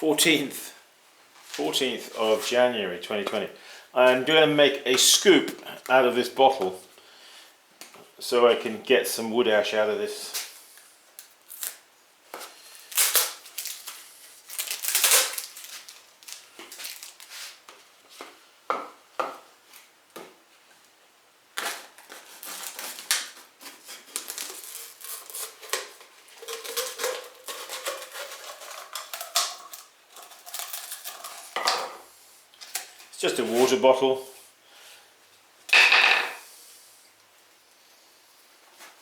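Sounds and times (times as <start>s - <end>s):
plastic bottle crackling: 12.8s - 17.3s, 21.6s - 31.7s.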